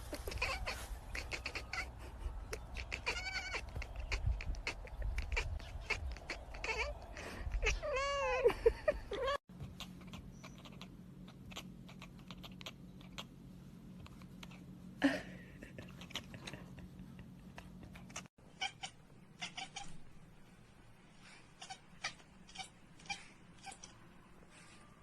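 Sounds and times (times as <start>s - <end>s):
cat chattering: 0.1s - 8.4s, 9.1s - 13.4s, 15.8s - 20.0s, 21.5s - 24.0s.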